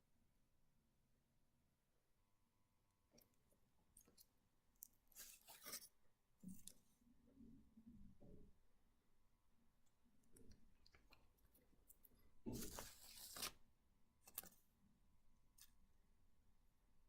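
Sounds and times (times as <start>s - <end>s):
plastic or paper rustling: 12.5s - 13.6s.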